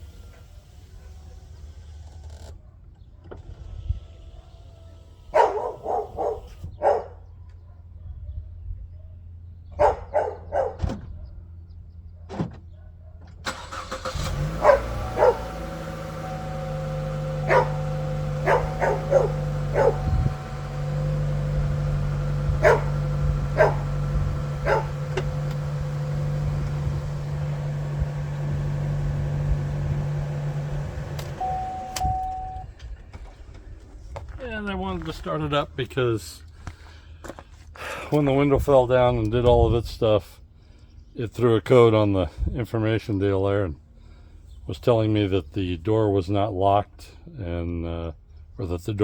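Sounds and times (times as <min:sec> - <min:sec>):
car engine starting and idling: 0:00.0 - 0:06.8, 0:11.9 - 0:36.6
dog barking: 0:05.3 - 0:11.4, 0:12.2 - 0:13.3, 0:14.4 - 0:15.6, 0:17.3 - 0:20.4, 0:22.6 - 0:24.0, 0:24.6 - 0:25.1.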